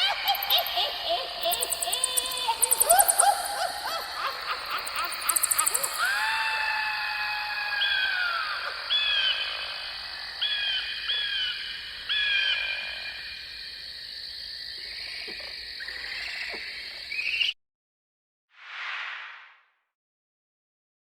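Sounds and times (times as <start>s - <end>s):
high animal-like calls: 0.0s - 9.8s.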